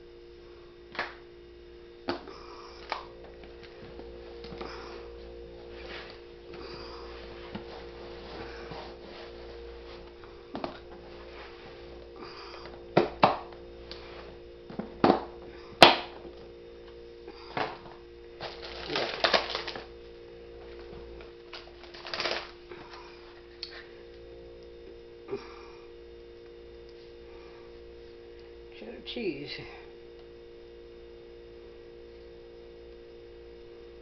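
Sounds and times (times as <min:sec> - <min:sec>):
electrical hum: 0:00.0 - 0:34.0
plastic packaging crinkling: 0:18.4 - 0:19.9, 0:21.5 - 0:23.0.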